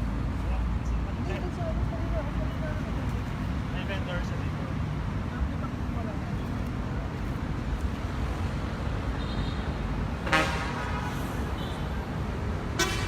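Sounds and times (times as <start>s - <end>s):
low rumble of road traffic: 0.0s - 13.0s
vehicle horn honk: 10.3s - 11.9s, 12.8s - 13.0s.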